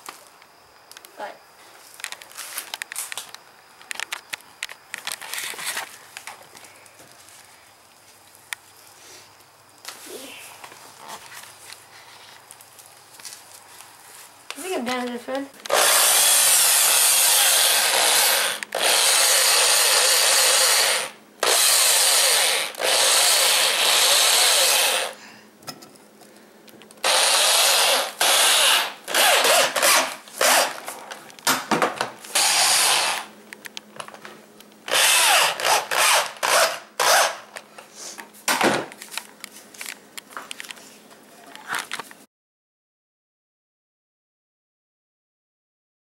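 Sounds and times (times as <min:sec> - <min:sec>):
power tool working on wood: 0:15.7 - 0:25.2, 0:27.0 - 0:30.8, 0:32.3 - 0:33.3, 0:34.9 - 0:37.4.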